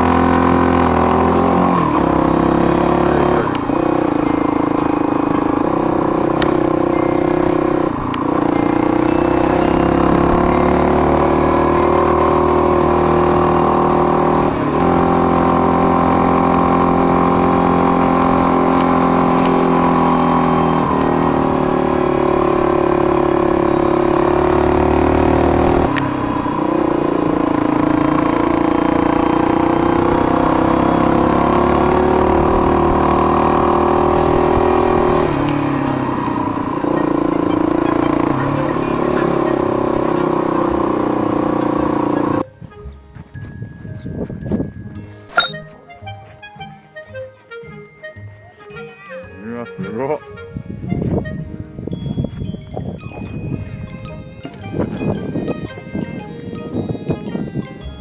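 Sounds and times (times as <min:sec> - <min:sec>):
motorcycle engine with gear changes: 0:00.0 - 0:42.4.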